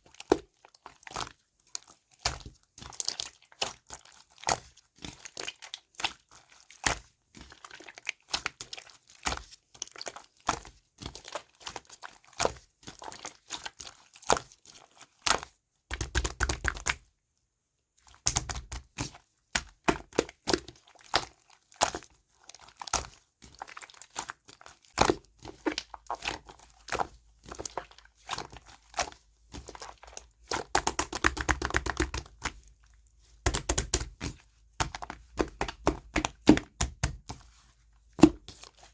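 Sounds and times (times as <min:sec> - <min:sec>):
sticky slime clicks and crackles: 0:18.2 - 0:18.8, 0:25.0 - 0:32.6, 0:33.4 - 0:37.4.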